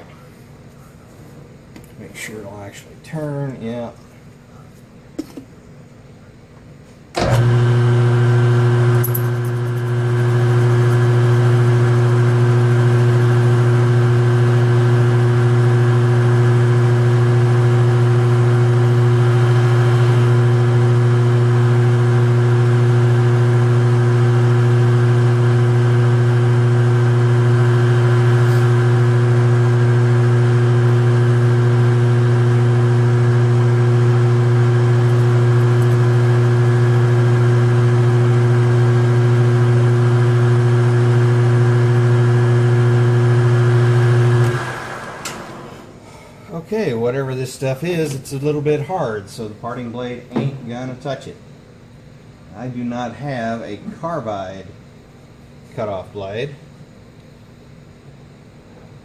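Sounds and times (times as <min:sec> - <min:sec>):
metal lathe motor humming: 0:07.2 - 0:45.9.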